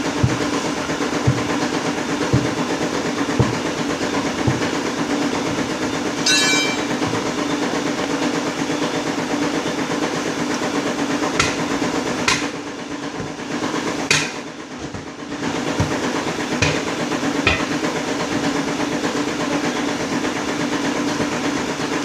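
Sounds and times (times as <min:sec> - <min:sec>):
sharp knocks: 0:00.0 - 0:07.6, 0:11.4 - 0:18.6
motor humming: 0:00.0 - 0:09.0
high squeal: 0:06.2 - 0:07.0.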